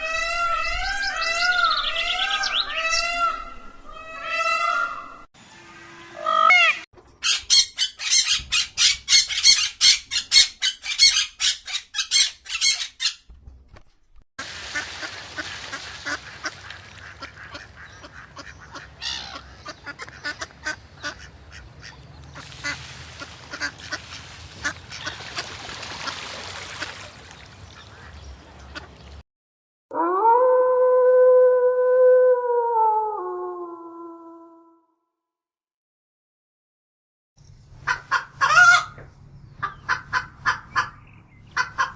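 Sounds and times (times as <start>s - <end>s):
ducks quacking loudly: 14.6s - 29.0s.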